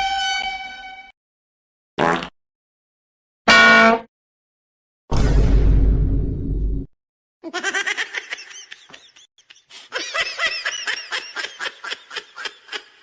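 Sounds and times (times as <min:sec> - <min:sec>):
rapid high-pitched laughing: 0:07.4 - 0:13.0.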